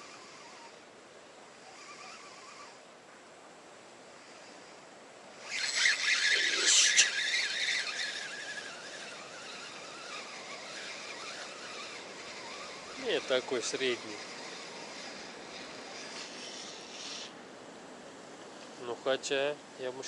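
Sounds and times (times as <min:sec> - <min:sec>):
fishing reel whirring squeal: 0:00.0 - 0:00.9, 0:01.5 - 0:02.9, 0:04.1 - 0:17.4.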